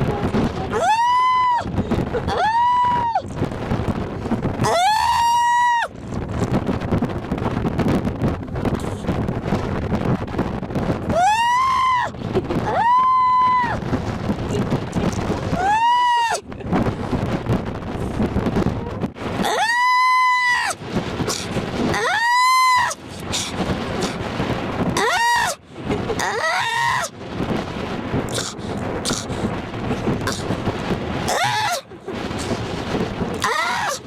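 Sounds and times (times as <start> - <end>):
steady rumbling noise: 0.0 - 34.0
seal pup wailing: 19.4 - 23.5, 25.0 - 25.6, 26.2 - 27.1, 31.3 - 31.8, 33.4 - 34.0.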